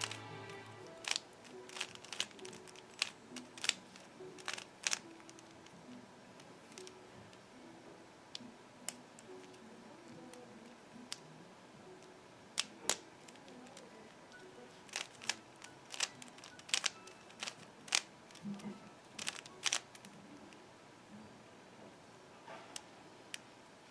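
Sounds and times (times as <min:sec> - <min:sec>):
speed cube layers clicking: 0:00.8 - 0:05.7, 0:14.8 - 0:18.6, 0:19.2 - 0:20.1.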